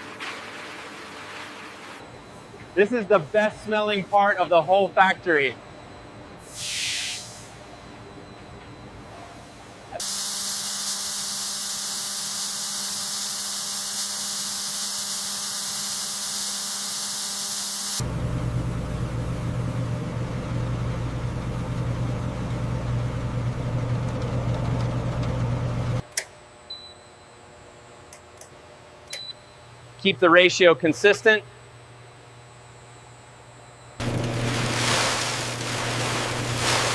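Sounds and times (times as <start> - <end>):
loud steady machine hiss: 6.4 - 7.6, 10.0 - 18.1
low machine rumble with hum: 10.0 - 26.0, 31.4 - 36.9.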